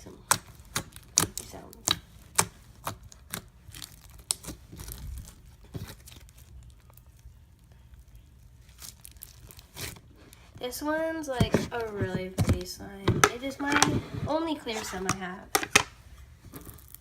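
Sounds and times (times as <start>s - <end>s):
foam slime crackling and popping: 0.0s - 10.4s, 16.5s - 17.0s.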